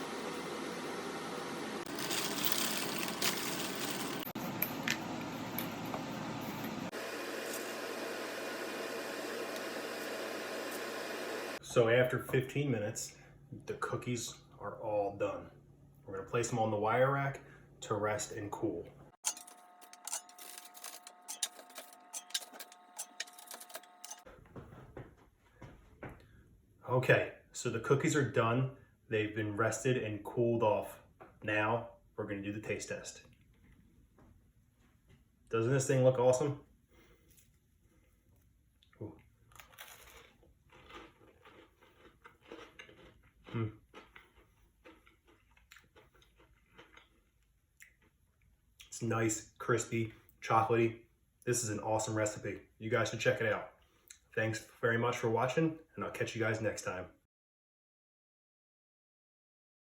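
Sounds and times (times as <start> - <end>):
chewing crispy cookie: 37.2 - 49.0.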